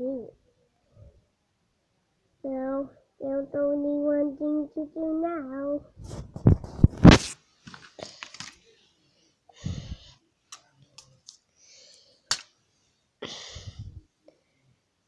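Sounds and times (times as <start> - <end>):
packaging rustling: 6.8 - 8.6.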